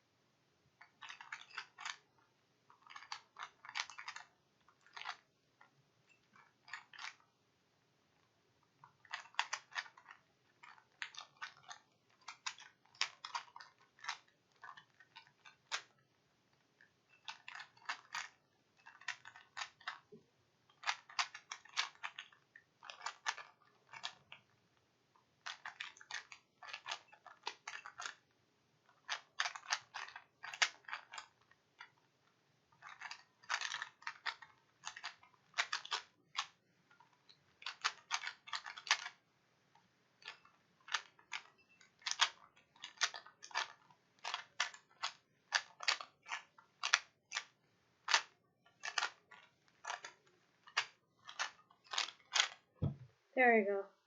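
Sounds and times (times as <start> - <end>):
puzzle cube plastic clicks: 0.8 - 7.3, 8.2 - 53.1.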